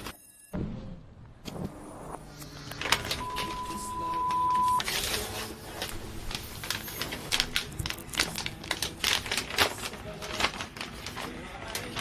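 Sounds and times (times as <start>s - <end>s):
packaging clicks and crinkles: 4.7s - 12.0s.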